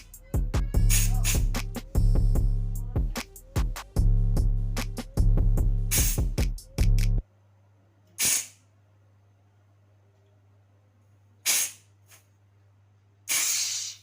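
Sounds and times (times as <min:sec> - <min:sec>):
gas hissing through tubing: 0:08.2 - 0:08.6, 0:11.5 - 0:11.8, 0:13.3 - 0:14.0.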